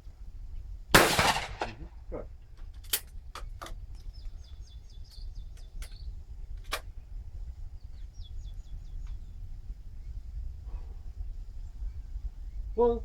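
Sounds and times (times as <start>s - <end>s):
wind rumbling on microphone: 0.0s - 13.0s
small bird chirping: 3.4s - 10.5s.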